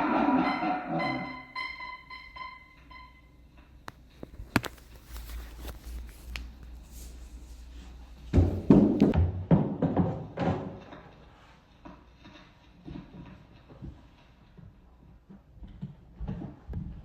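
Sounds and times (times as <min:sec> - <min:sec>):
toy chiming tones: 0:00.2 - 0:03.4.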